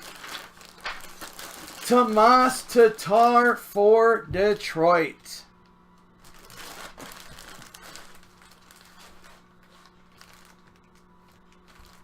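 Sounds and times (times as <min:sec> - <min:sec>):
packaging crinkling: 0:00.0 - 0:02.9, 0:06.0 - 0:12.0.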